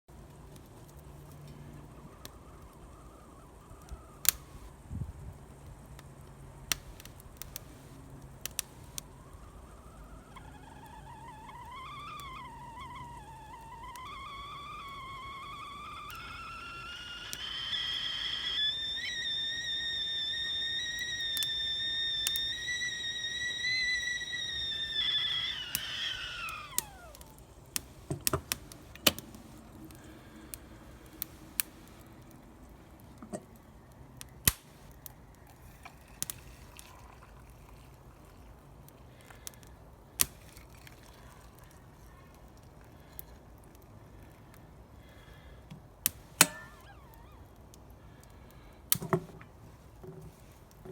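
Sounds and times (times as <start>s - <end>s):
crackling campfire: 0.1s - 50.9s
whistling kettle: 1.5s - 5.0s, 8.5s - 32.3s, 34.4s - 42.3s, 46.1s - 47.5s, 48.9s - 50.9s.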